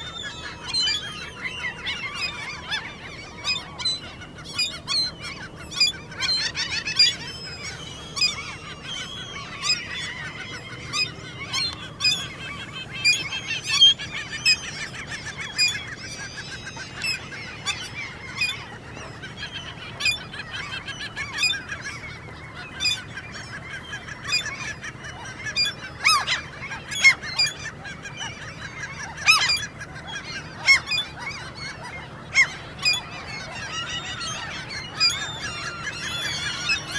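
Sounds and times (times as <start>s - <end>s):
gulls squeaking calls: 0.0s - 36.9s.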